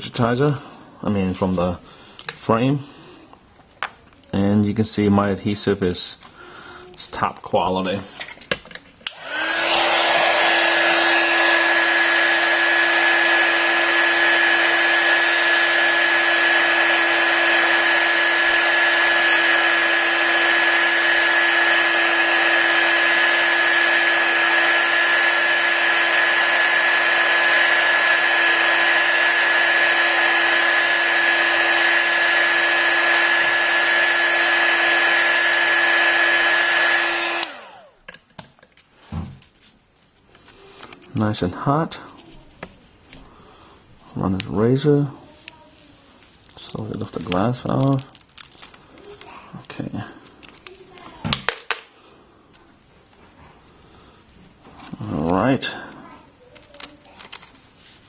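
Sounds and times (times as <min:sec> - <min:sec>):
heat gun blowing hot air: 0:09.0 - 0:38.0, 0:54.8 - 0:56.1.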